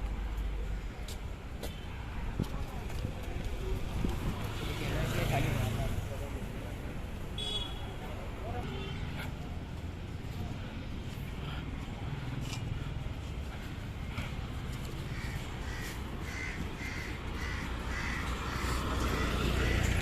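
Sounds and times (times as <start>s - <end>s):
street traffic rumble: 0.0s - 20.0s
crows cawing: 15.0s - 20.0s.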